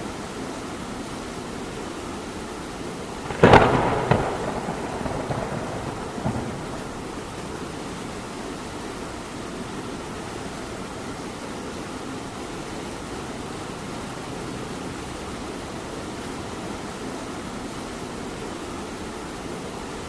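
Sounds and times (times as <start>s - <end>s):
steady rain: 0.0s - 20.0s
thunderclap: 3.2s - 8.3s.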